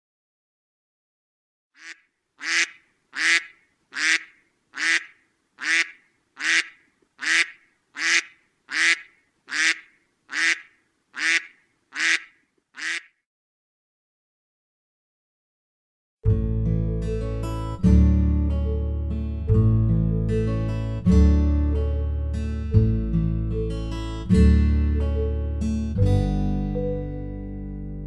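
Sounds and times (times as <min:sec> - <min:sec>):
duck quacking: 0:01.8 - 0:13.2.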